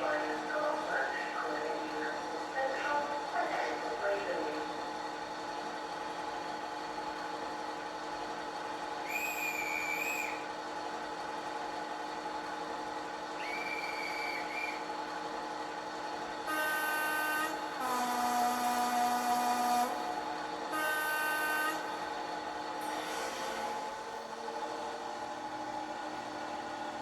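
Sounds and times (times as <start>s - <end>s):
model train engine sound: 0.0s - 27.0s
two-tone train horn: 9.1s - 10.4s, 16.4s - 22.2s, 22.8s - 23.9s.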